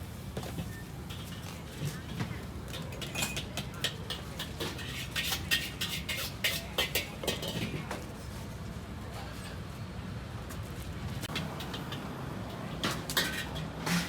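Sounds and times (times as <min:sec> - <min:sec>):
metal utensils clattering on pans: 0:00.4 - 0:08.3, 0:11.2 - 0:14.0.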